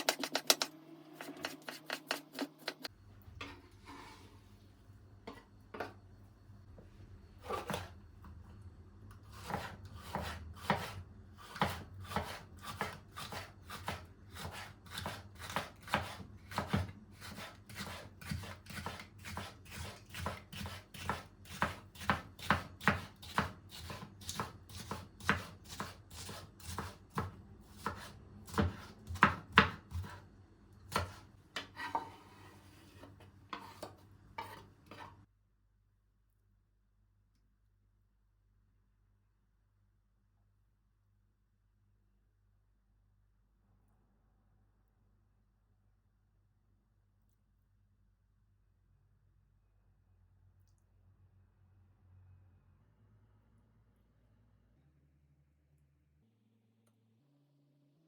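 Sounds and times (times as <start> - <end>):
knife chopping on cutting board: 0.0 - 2.9, 9.3 - 30.2, 30.9 - 32.2.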